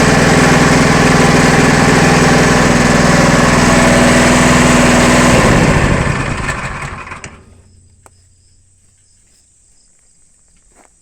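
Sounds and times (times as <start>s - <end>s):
small gas engine running: 0.0s - 7.7s
faint crickets chirping: 7.5s - 11.0s.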